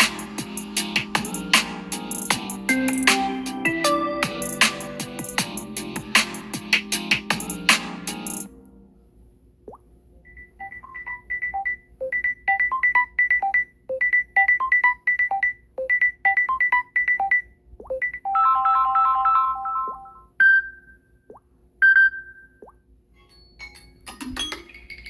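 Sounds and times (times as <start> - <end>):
beeping ringtone melody: 0.0 - 8.5, 10.6 - 20.8.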